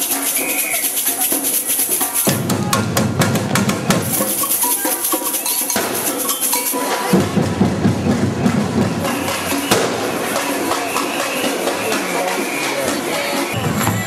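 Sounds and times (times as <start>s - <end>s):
drums and shakers playing: 0.0s - 14.0s
sharp drum strikes: 7.0s - 12.4s.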